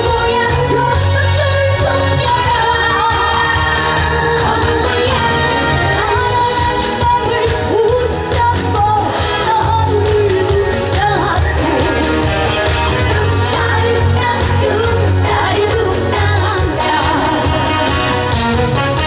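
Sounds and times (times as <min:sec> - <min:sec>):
woman singing: 0:00.0 - 0:18.1
amplified band with steady beat: 0:00.0 - 0:19.0.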